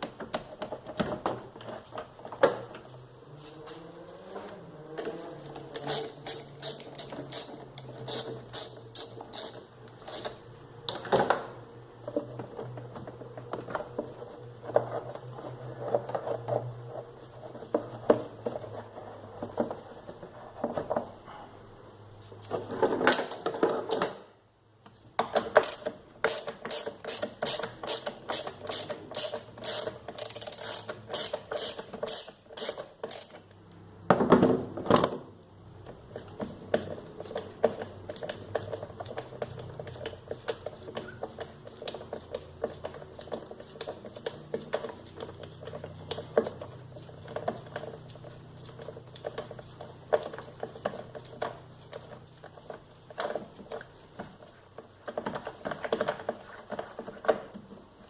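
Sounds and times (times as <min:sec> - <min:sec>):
ratchet wrench clicking: 0:05.8 - 0:10.4, 0:25.6 - 0:33.5.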